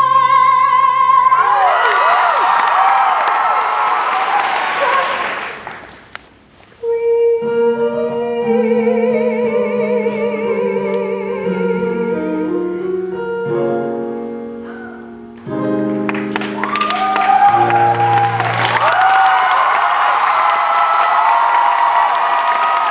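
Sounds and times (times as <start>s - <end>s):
person singing with vibrato: 0.0s - 2.0s, 6.8s - 16.0s
cheering with high whoops: 1.4s - 5.6s, 16.4s - 22.9s
audience applause: 1.5s - 6.2s, 16.0s - 22.9s
accompaniment chords: 7.2s - 16.7s.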